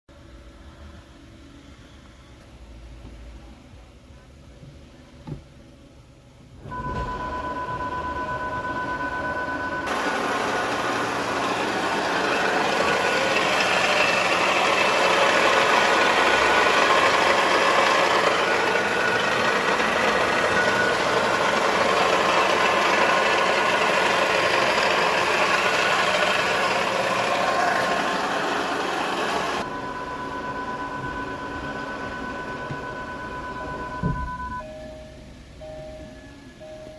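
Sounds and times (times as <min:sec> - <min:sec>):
car engine running: 0:07.4 - 0:34.6.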